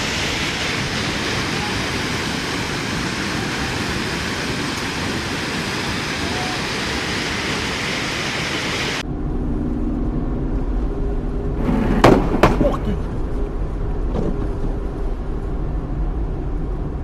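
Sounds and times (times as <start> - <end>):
floodwater rushing: 0.0 - 9.0.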